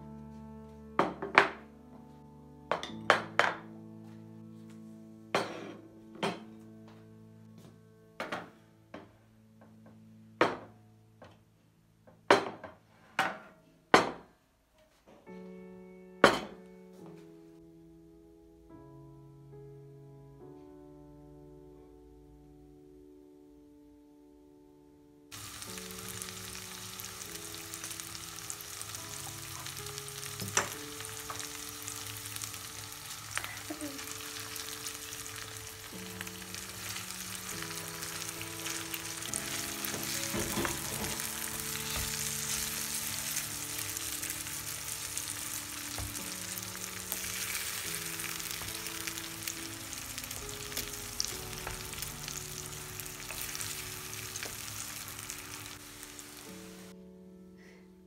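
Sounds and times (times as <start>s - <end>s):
soft background music: 0.0s - 58.0s
food sizzling in a frying pan: 25.3s - 56.9s.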